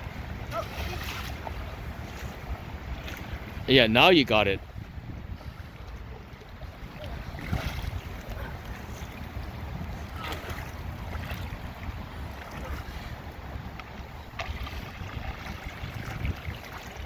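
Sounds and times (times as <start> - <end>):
wind buffeting microphone: 0.0 - 17.0
water swirling down a drain: 14.4 - 17.0.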